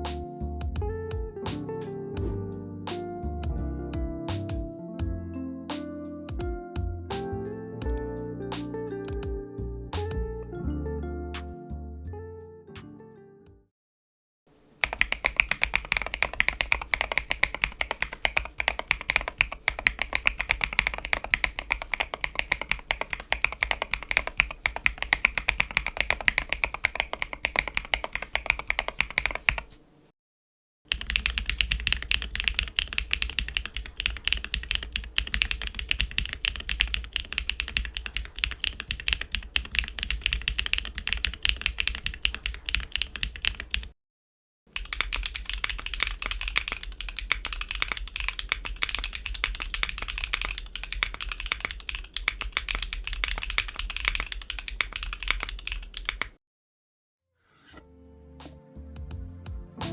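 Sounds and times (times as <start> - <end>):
typing on mechanical keyboard: 14.6 - 30.0, 30.9 - 43.9, 44.8 - 56.4.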